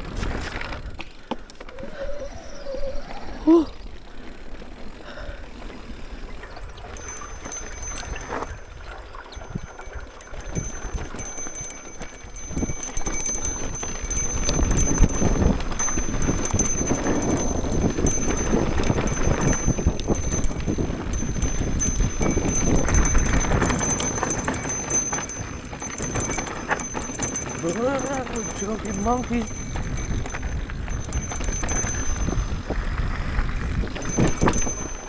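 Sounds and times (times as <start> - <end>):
bike tyre and suspension rumble: 0.0 - 35.0
bike chattering rattles: 6.6 - 35.0
fast metallic ticking: 7.0 - 8.6, 9.4 - 32.7.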